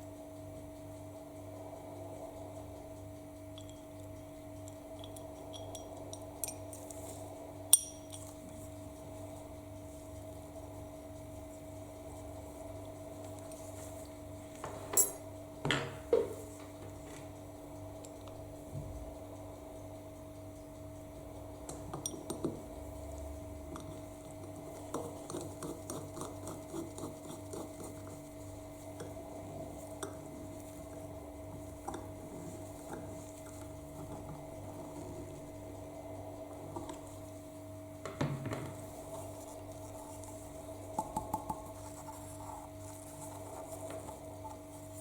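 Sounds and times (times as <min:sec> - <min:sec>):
steady low hum: 0:00.0 - 0:45.0
sharp metallic clink: 0:07.7 - 0:08.3, 0:14.9 - 0:15.3.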